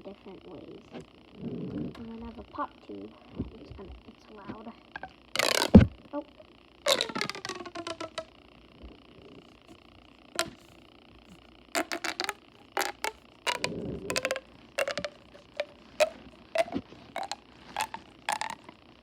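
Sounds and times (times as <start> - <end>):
plastic pop tube popping: 5.4 - 5.9, 6.9 - 8.3, 10.4 - 10.8, 11.8 - 18.7.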